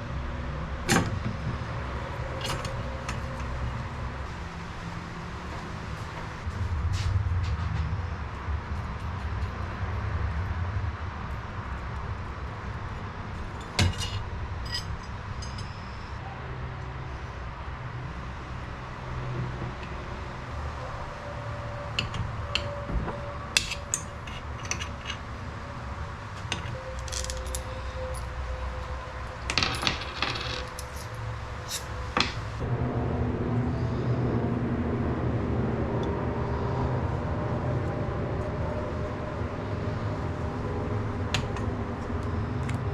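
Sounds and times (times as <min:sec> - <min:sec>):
metal parts clinking: 0:13.6 - 0:16.0, 0:23.6 - 0:25.3, 0:26.4 - 0:28.3, 0:29.4 - 0:32.4
steady low hum: 0:30.8 - 0:42.9.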